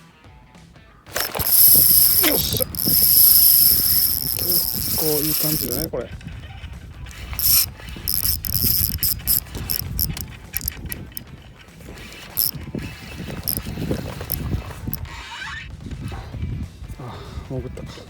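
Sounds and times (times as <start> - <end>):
fishing reel clicking and rattling: 1.1 - 5.9, 7.1 - 11.2, 11.9 - 15.0.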